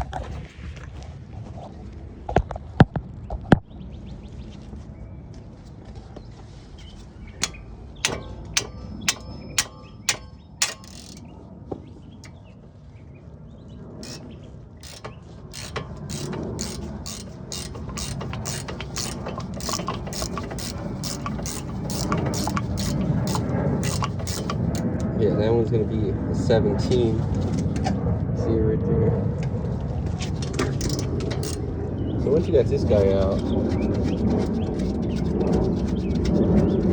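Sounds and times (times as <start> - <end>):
ratchet wrench clicking: 7.4 - 11.3, 14.0 - 25.1, 30.2 - 31.7, 32.9 - 36.9.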